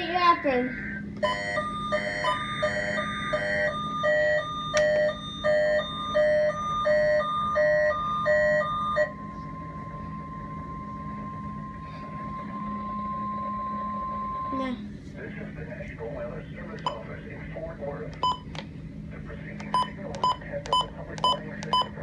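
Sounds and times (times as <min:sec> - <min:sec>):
alternating two-tone alarm beeps: 0:01.2 - 0:09.7, 0:18.2 - 0:18.6, 0:19.6 - 0:22.0
steady single alarm tone: 0:01.2 - 0:14.5.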